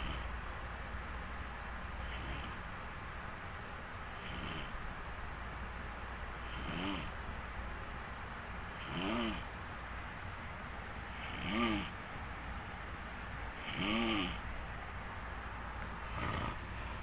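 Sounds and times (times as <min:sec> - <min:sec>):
low steady hum: 0:00.0 - 0:17.0
person snoring: 0:08.8 - 0:09.5, 0:11.2 - 0:12.0, 0:13.6 - 0:14.4, 0:16.0 - 0:16.8.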